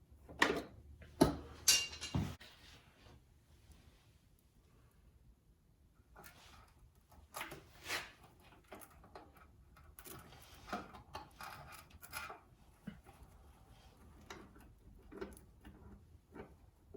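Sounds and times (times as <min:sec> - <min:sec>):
tools clicking and scraping: 0:01.3 - 0:02.4, 0:06.2 - 0:16.6.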